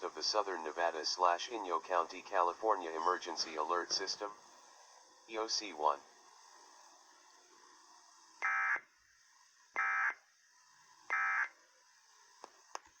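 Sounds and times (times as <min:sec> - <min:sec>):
digital data tone bursts: 0:08.4 - 0:08.8, 0:09.8 - 0:10.2, 0:11.1 - 0:11.5.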